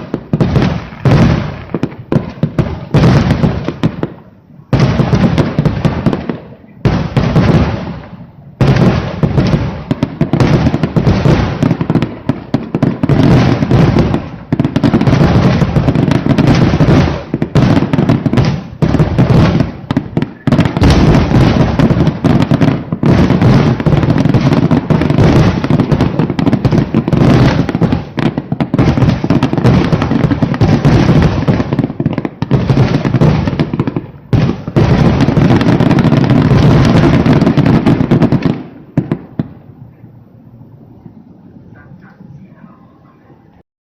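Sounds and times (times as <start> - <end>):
firework shells bursting: 6.9 - 39.5.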